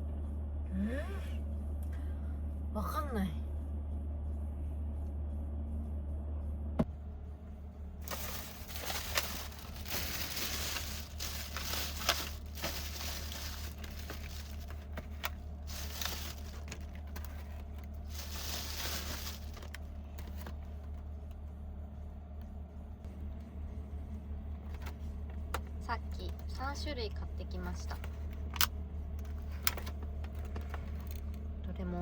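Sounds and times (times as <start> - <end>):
steady low hum: 0.0 - 32.0
plastic packaging crinkling: 8.0 - 20.7.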